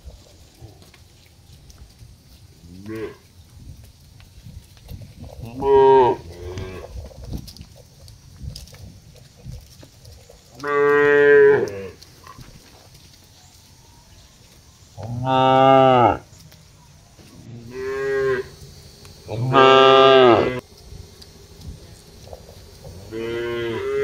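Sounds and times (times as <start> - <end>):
cow mooing: 15.0 - 16.2, 17.6 - 18.5, 19.3 - 20.6, 23.0 - 24.0.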